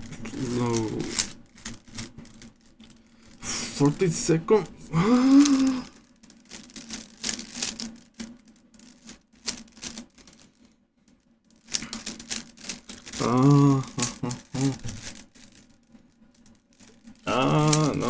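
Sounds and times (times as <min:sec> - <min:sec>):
short vocal sound: 0:00.0 - 0:01.3, 0:03.4 - 0:06.0, 0:13.2 - 0:15.0, 0:17.3 - 0:18.0
plastic cube layers clicking: 0:00.0 - 0:10.5, 0:11.5 - 0:18.0.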